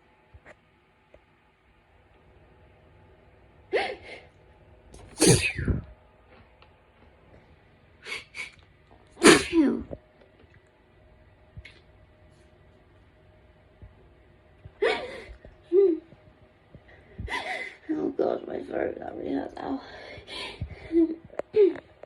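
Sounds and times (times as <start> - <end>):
person sneezing: 5.0 - 5.8, 9.2 - 9.8.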